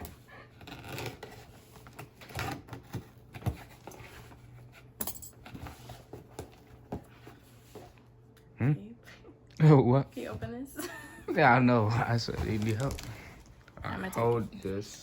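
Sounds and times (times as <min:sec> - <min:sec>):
tape and packaging rustling: 0:11.8 - 0:15.0.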